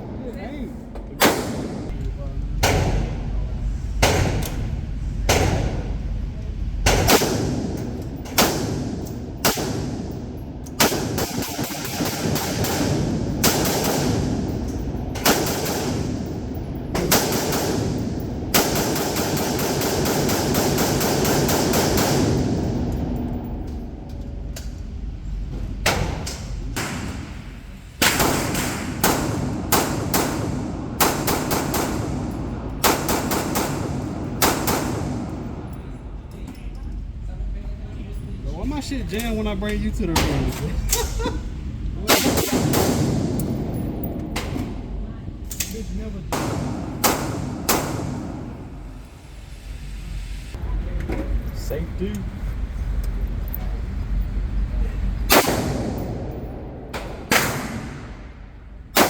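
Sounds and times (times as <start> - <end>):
gunshots echoing indoors: 1.2 - 24.6, 25.8 - 36.3, 39.6 - 49.1, 55.3 - 59.0.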